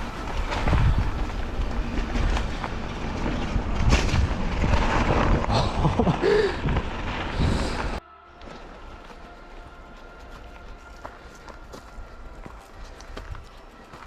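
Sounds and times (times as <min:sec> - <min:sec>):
bike rattles and knocks: 0:00.0 - 0:07.7
wind rumble on microphone: 0:00.0 - 0:08.0.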